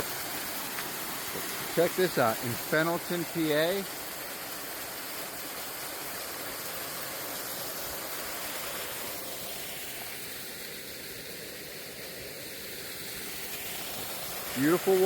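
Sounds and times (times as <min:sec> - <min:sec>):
water splashing onto rocks: 0:00.0 - 0:09.1.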